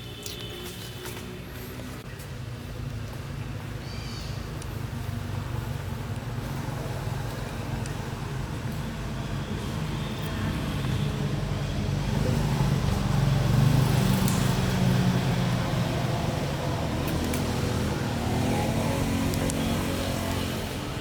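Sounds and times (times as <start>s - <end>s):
vehicle engine passing by: 10.1s - 21.0s.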